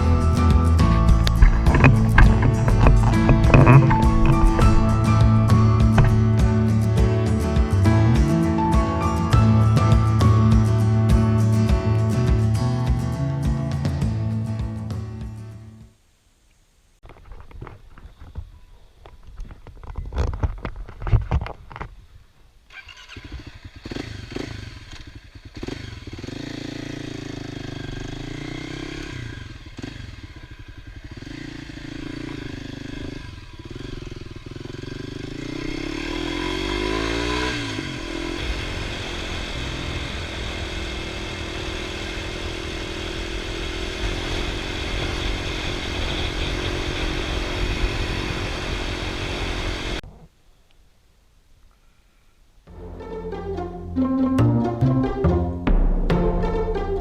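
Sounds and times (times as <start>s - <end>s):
motorcycle engine revving: 0.0s - 10.6s, 22.7s - 50.0s.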